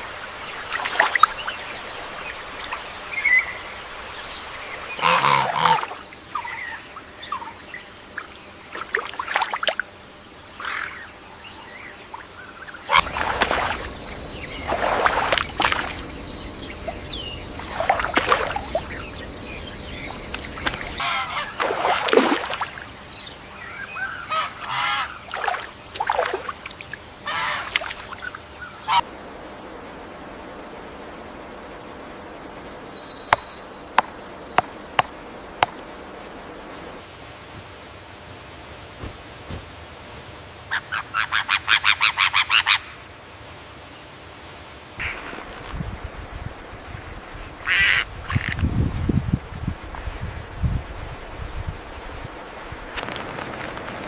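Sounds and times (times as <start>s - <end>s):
birds calling: 0.0s - 8.4s, 10.6s - 26.5s, 27.2s - 29.2s, 32.1s - 37.0s
steady background hiss: 0.0s - 54.0s.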